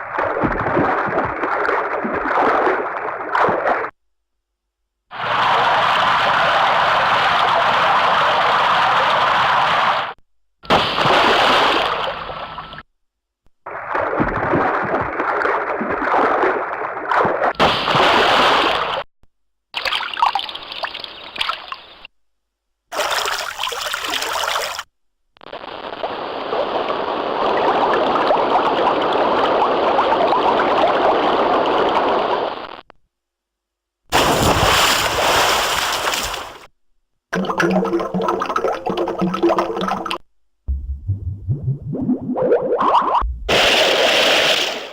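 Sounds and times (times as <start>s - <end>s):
water splashing: 34.1s - 36.7s, 37.4s - 41.6s, 42.5s - 44.9s
rushing water: 34.2s - 36.7s, 37.4s - 40.2s
water trickling: 37.4s - 40.2s.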